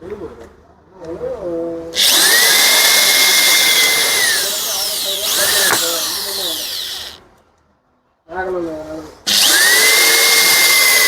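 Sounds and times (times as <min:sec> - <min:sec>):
electric drill boring holes: 0:02.0 - 0:07.2, 0:09.3 - 0:11.0.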